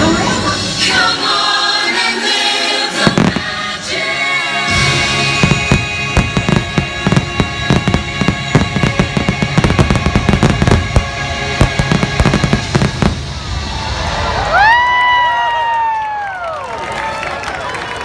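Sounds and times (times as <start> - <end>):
loud show music: 0.0 - 13.6
fireworks bangs: 3.0 - 4.1, 4.7 - 14.1.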